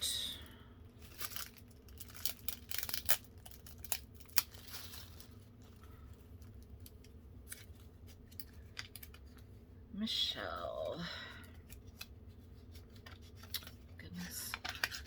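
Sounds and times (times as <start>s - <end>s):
paper rustling and crinkling: 0.9s - 9.5s, 11.6s - 15.0s.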